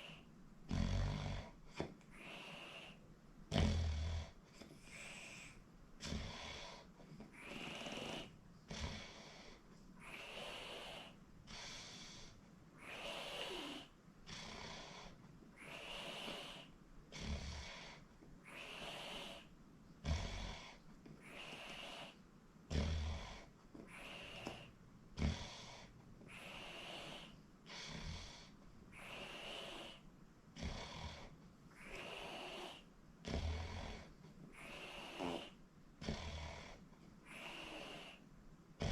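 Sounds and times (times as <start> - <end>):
deep snorts: 0.0 - 38.9
person snoring: 0.7 - 1.6, 2.2 - 6.8, 7.4 - 9.3, 12.8 - 17.8, 18.5 - 30.0, 30.6 - 38.2.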